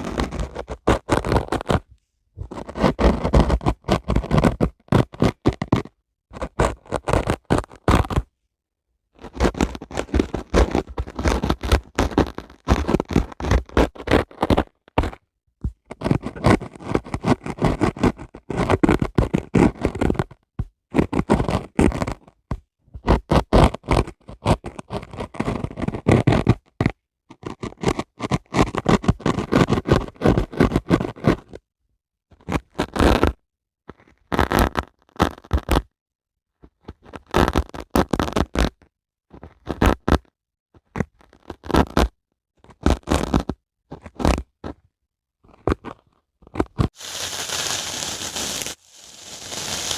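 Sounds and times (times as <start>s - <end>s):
dry sponge scraping: 2.4s - 4.6s, 47.0s - 49.9s.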